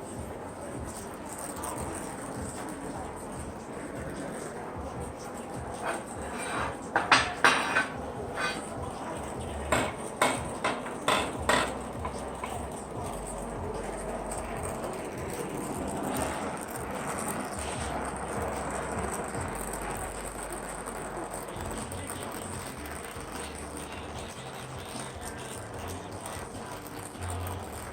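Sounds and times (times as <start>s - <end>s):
soldering torch hissing: 0.0s - 27.9s
metal pipes clinking: 5.8s - 27.9s.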